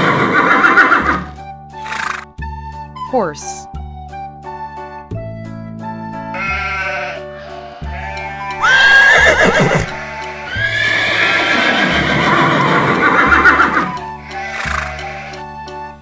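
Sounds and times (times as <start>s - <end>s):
horse whinnying: 0.0s - 2.2s, 6.4s - 15.4s
children's music with steady beat: 2.7s - 6.1s.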